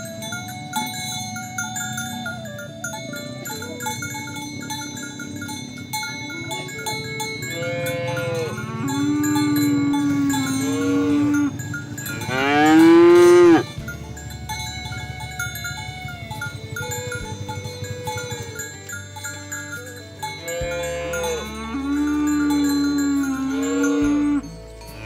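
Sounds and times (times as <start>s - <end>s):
bell-like tinkling: 0.0s - 25.0s
cattle mooing: 6.1s - 25.0s.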